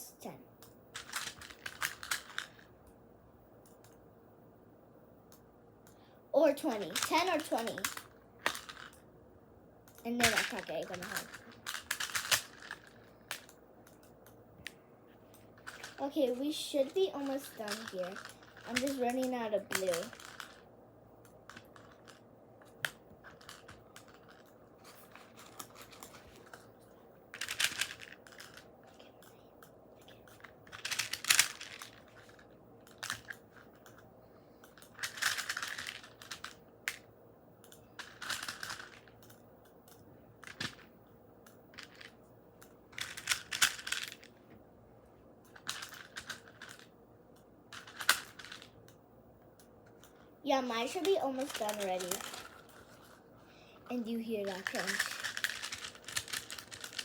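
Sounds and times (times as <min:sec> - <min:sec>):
plastic beads rattling: 0:00.9 - 0:02.7, 0:06.7 - 0:09.0, 0:10.0 - 0:13.6, 0:15.4 - 0:20.7, 0:21.5 - 0:22.2, 0:22.8 - 0:26.7, 0:27.3 - 0:29.0, 0:30.2 - 0:34.0, 0:34.6 - 0:37.1, 0:38.0 - 0:39.3, 0:40.4 - 0:40.9, 0:41.7 - 0:42.2, 0:43.0 - 0:44.4, 0:45.5 - 0:46.9, 0:47.7 - 0:48.8, 0:50.7 - 0:53.3, 0:53.9 - 0:57.0
scattered clicks: 0:03.6 - 0:04.0, 0:09.8 - 0:12.6, 0:13.3 - 0:15.9, 0:37.6 - 0:40.6.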